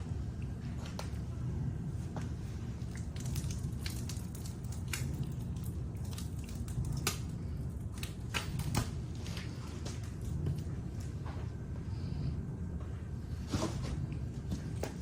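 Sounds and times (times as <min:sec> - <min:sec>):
low rumble of flame: 0:00.0 - 0:15.0
firewood crackling and popping: 0:03.0 - 0:11.1.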